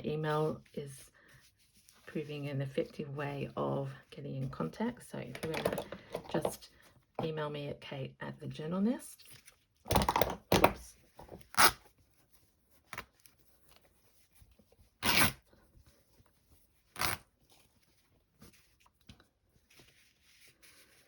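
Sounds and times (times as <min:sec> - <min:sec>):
fabric being torn by hand: 0:11.4 - 0:11.8, 0:15.0 - 0:15.4, 0:16.9 - 0:17.3.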